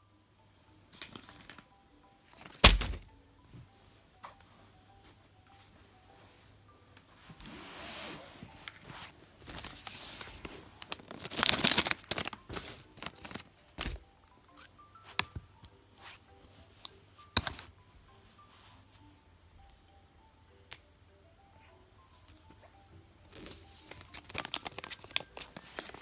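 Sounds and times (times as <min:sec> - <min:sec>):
packaging tearing and crinkling: 0:09.5 - 0:14.0, 0:23.8 - 0:26.0.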